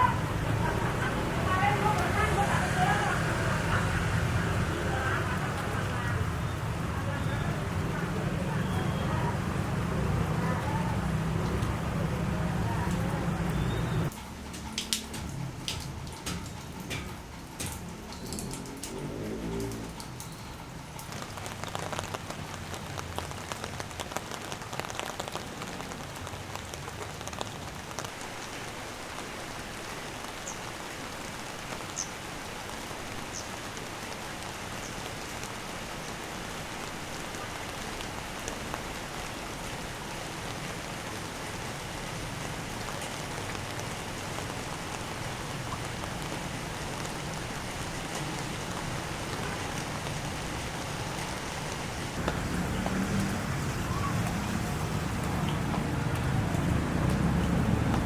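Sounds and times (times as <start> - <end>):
rain on hard surfaces: 0.0 - 58.0
sharp drip ticks: 12.9 - 25.4, 44.9 - 58.0.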